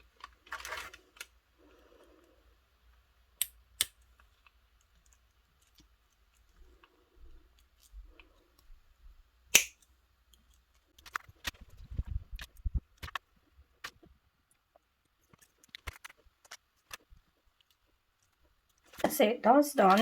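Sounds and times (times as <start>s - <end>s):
sharp snap: 9.5s - 9.8s.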